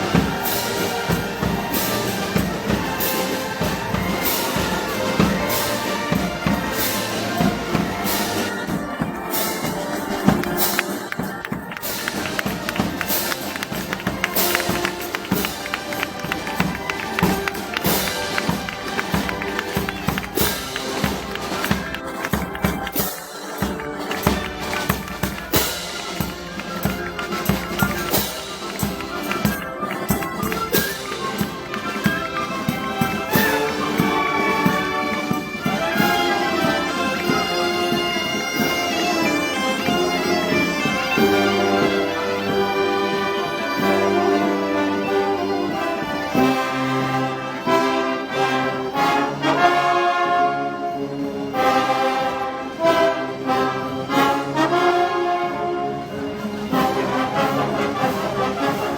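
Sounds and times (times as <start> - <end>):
drum strokes: 0.0 - 39.0
loud percussion strikes: 0.0 - 42.7
festival band music: 0.0 - 58.9
low brass: 0.0 - 58.9
nasal reed-wind melody: 0.0 - 58.9.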